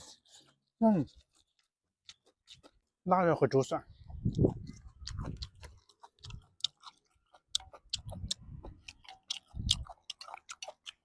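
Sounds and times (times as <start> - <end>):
soft chewing thuds: 0.0 - 3.0, 3.6 - 11.0
wet mouth clicks: 4.1 - 11.0.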